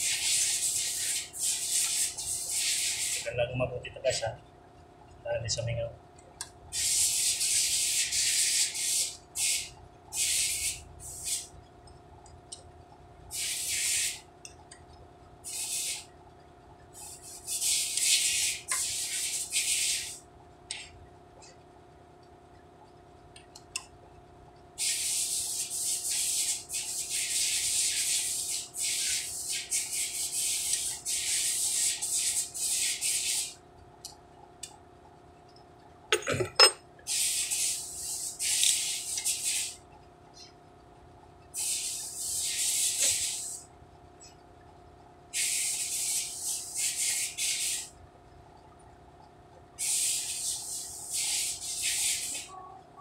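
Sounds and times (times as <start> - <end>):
spray paint can hissing: 0.0 - 3.3, 6.7 - 11.5, 13.3 - 14.3, 15.4 - 16.1, 17.0 - 20.2, 24.8 - 33.6, 37.1 - 39.8, 41.5 - 43.7, 45.3 - 47.9, 49.8 - 52.5.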